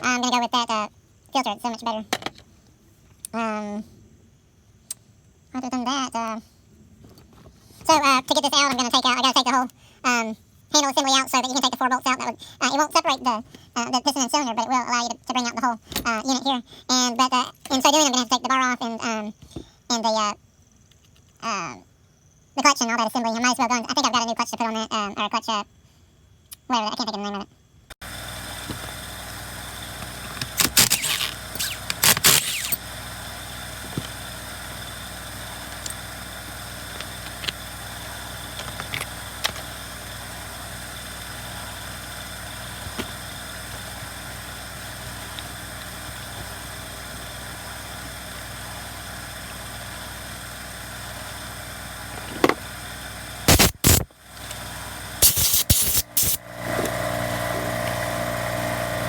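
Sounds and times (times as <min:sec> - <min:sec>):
steady machine hum: 0:28.0 - 0:59.0.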